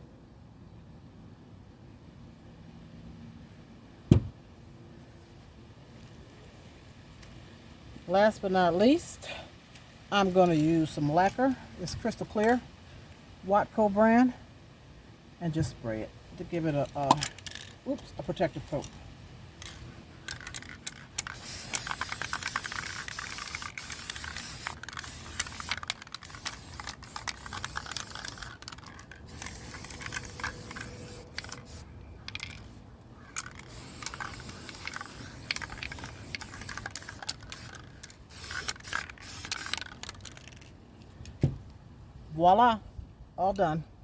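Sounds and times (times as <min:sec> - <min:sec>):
aerosol can spraying: 0:21.2 - 0:31.9, 0:33.6 - 0:39.8.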